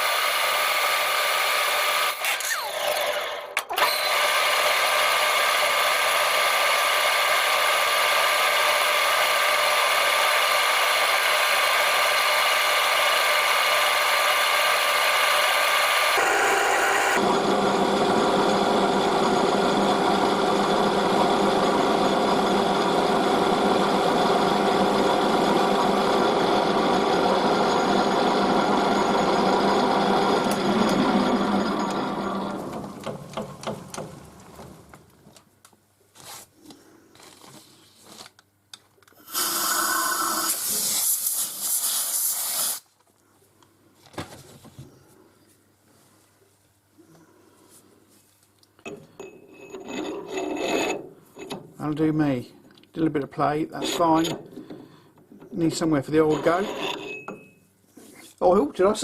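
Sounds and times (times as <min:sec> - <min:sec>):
metal lathe whining: 0:00.1 - 0:34.3, 0:49.2 - 0:51.6, 0:55.7 - 0:57.4.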